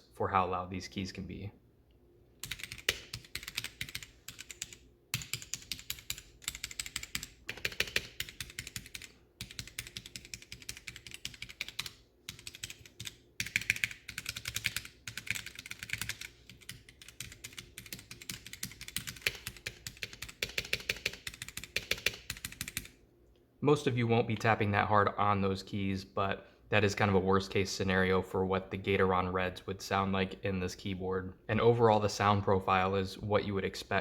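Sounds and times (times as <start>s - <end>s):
loud mechanical keyboard typing: 2.4s - 22.9s.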